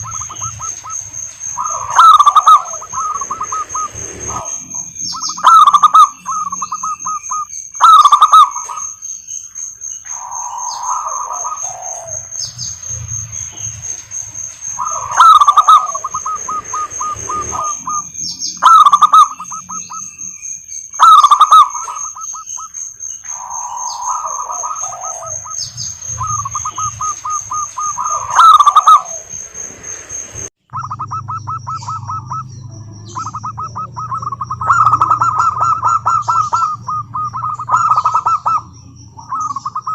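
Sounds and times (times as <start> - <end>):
high-pitched whine: 0.0 - 9.0, 9.9 - 39.9
doves cooing: 0.0 - 39.9
low hum: 24.0 - 39.9.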